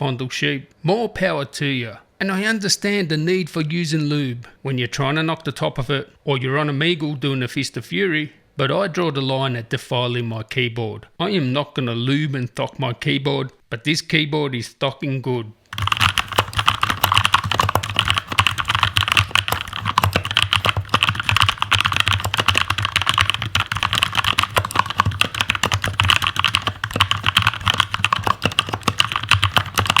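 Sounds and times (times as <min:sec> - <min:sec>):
fast typing on mechanical keyboard: 0:15.7 - 0:30.0.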